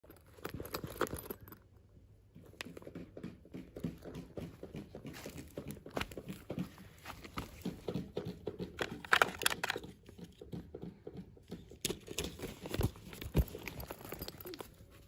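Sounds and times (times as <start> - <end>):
plastic and cardboard crinkling: 5.2 - 10.2, 11.9 - 15.0.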